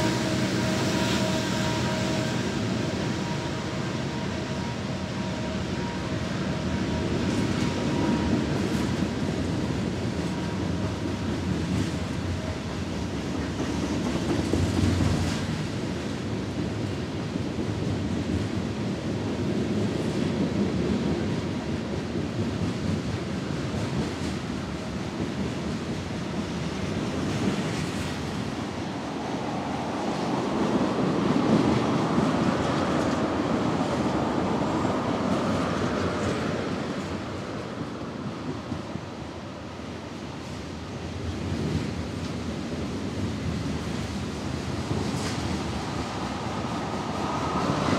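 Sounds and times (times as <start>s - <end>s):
train rumbling past: 0.0s - 47.9s.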